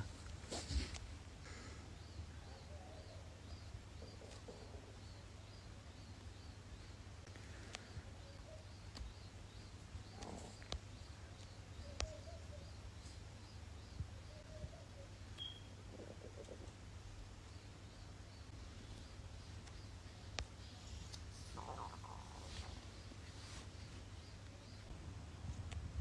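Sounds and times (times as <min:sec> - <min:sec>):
faint high chirp: 0:13.9 - 0:16.5.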